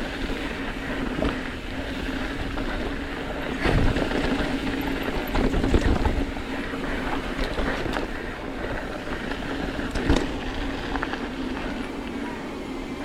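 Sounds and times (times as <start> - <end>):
bike tyre and drivetrain noise: 0.0 - 13.0
wind buffeting microphone: 0.0 - 13.0.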